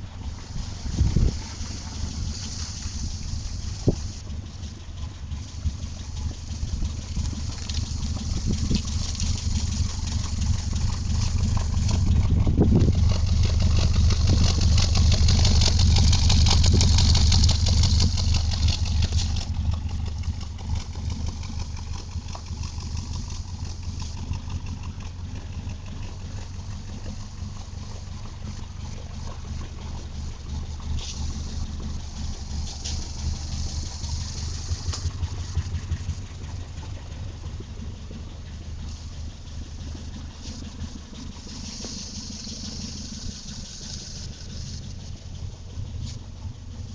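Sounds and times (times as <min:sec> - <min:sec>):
vehicle engine running: 0:00.0 - 0:46.9.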